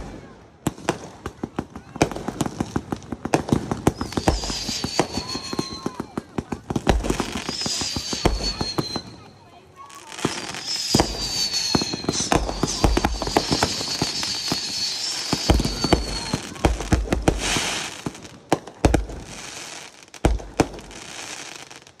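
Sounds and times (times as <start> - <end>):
fireworks banging and crackling: 0.0 - 22.0
firework whistle sliding down: 3.8 - 6.2, 7.0 - 18.0.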